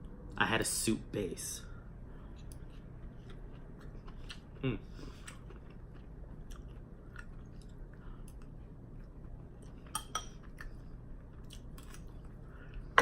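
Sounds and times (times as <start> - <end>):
chewing and wet mouth clicks: 5.2 - 12.3.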